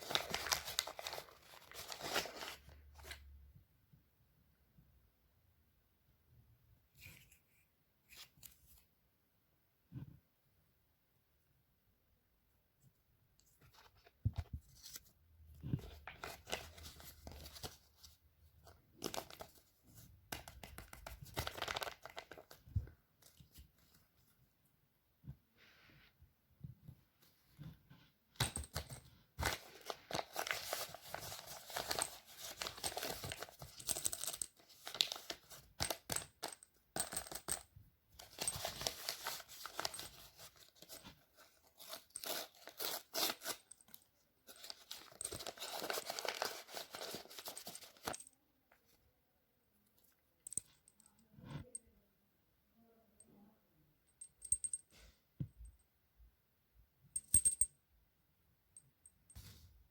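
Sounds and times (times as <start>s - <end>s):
plastic packaging crinkling and tearing: 0.0s - 2.6s, 21.2s - 22.6s.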